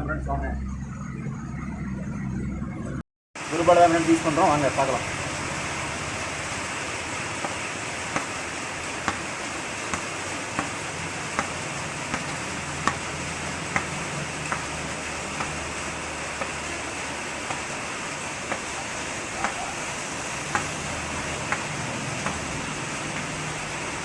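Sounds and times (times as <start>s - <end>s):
tennis ball knocking on cricket bat: 7.4s - 8.4s, 9.0s - 9.3s, 9.9s - 14.8s, 15.4s - 15.6s, 19.4s - 19.7s, 20.5s - 23.4s.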